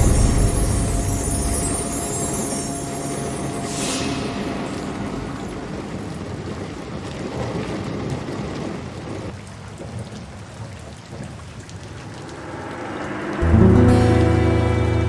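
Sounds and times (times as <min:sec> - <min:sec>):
low rumble of thunder: 0:00.0 - 0:09.3
steady rain: 0:00.0 - 0:15.0.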